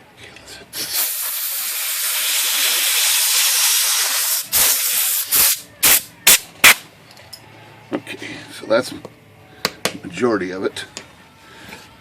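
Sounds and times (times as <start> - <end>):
pressurized spray hissing: 0.8 - 6.0.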